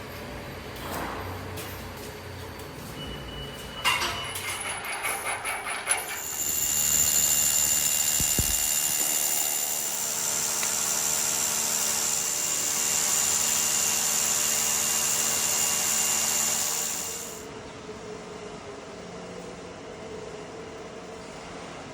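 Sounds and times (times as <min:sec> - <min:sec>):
power tool whining: 0:06.2 - 0:17.4.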